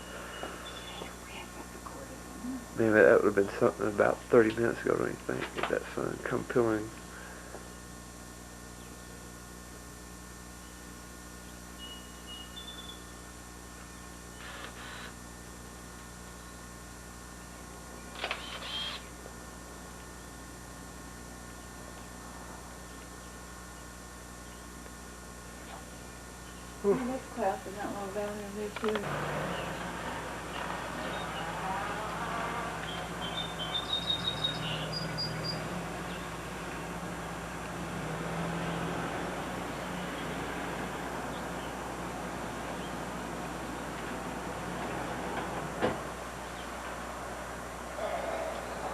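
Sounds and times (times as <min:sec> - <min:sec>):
camcorder low hum: 0:00.0 - 0:37.8
small bird chirping: 0:00.1 - 0:01.4, 0:11.4 - 0:13.1, 0:32.8 - 0:36.3.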